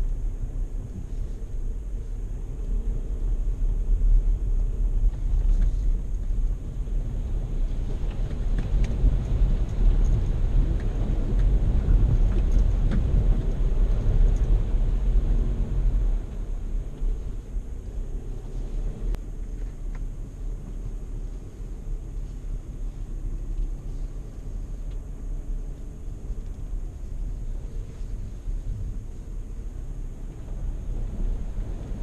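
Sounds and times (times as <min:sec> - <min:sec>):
engine and tyres rumbling: 0:00.0 - 0:32.0.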